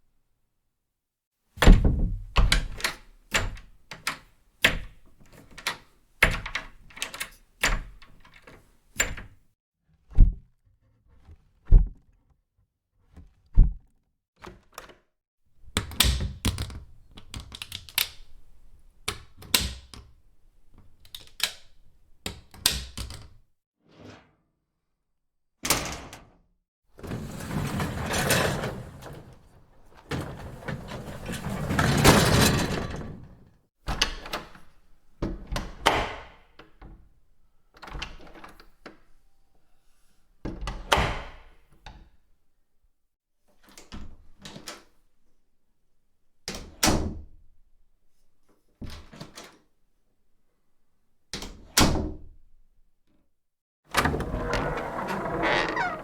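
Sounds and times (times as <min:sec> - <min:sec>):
scrap metal rattling: 0:30.2 - 0:33.0.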